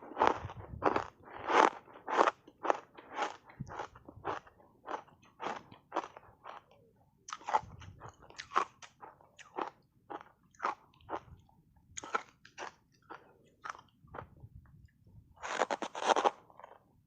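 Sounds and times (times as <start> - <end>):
ice being chewed with crunches: 0.0 - 16.9.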